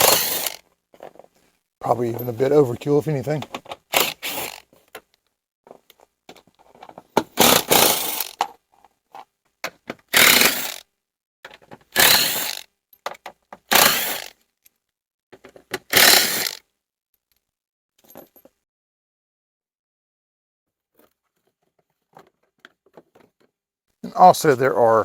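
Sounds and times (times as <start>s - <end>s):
impact driver hammering screws: 0.0s - 0.6s, 3.4s - 4.7s, 7.2s - 8.5s, 9.9s - 10.8s, 11.8s - 14.4s, 15.7s - 16.6s
small handling clicks and clinks: 1.9s - 6.9s.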